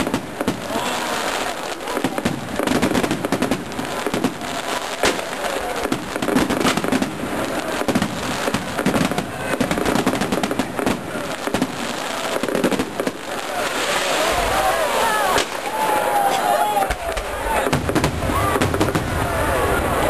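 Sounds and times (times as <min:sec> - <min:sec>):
fireworks cracking and banging: 0:00.0 - 0:20.0.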